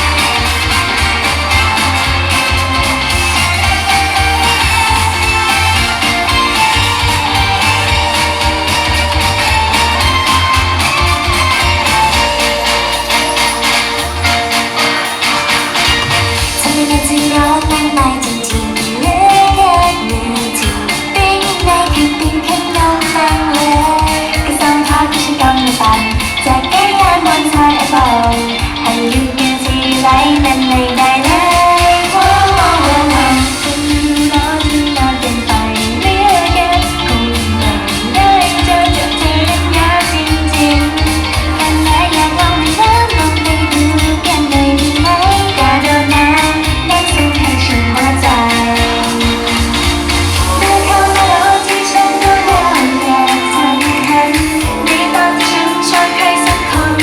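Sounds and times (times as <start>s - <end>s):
pop song with drum beat: 0.0s - 57.0s
woman singing: 16.5s - 57.0s.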